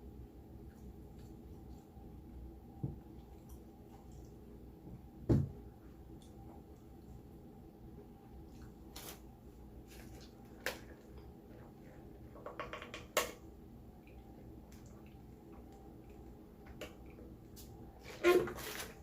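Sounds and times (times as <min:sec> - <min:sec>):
eating and food-handling noises: 0:08.3 - 0:13.2, 0:14.0 - 0:19.0.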